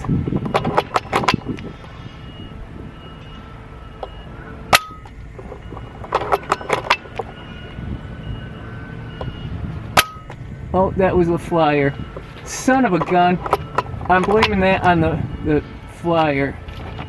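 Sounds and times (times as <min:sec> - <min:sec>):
small clicks and knocks: 0:00.0 - 0:01.7, 0:04.8 - 0:07.4.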